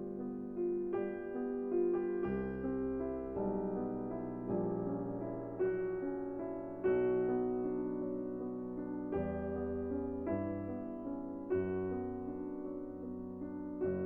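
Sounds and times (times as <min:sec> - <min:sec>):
soft piano chords: 0:00.0 - 0:14.0.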